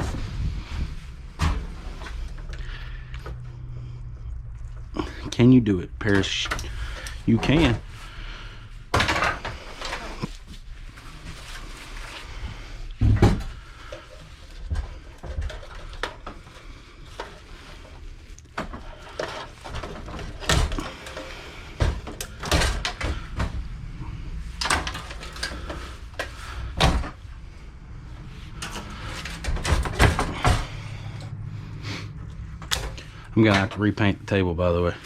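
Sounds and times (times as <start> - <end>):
computer parts knocking and clanking: 8.9 - 10.0.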